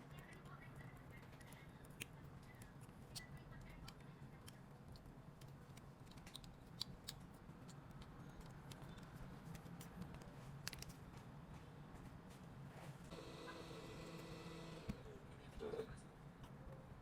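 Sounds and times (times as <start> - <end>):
small tools clicking on a phone: 1.3 - 11.0.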